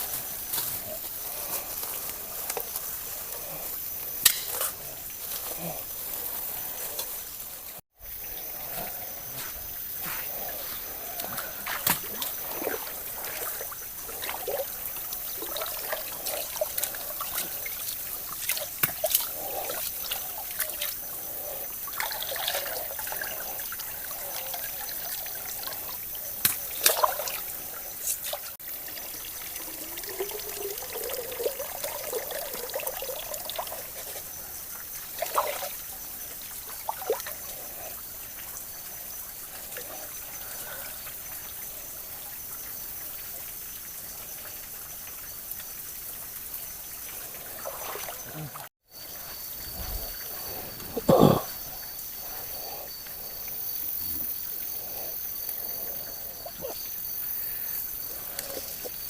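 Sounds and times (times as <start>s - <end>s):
water trickling and splashing: 0.0s - 59.0s.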